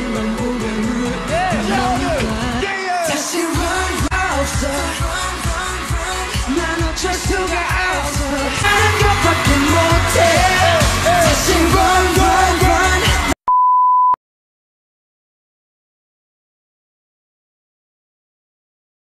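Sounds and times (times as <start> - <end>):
pop song with singing: 0.0 - 13.4
high beep tone: 13.5 - 14.2.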